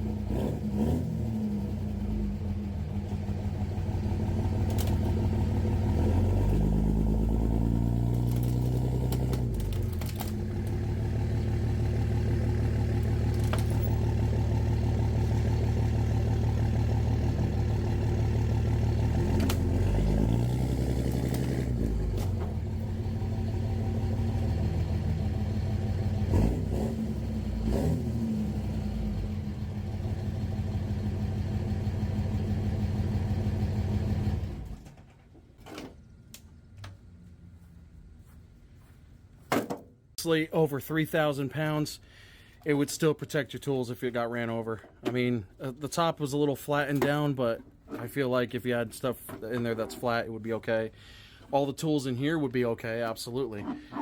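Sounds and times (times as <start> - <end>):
pickup truck engine revving: 0.0 - 34.6.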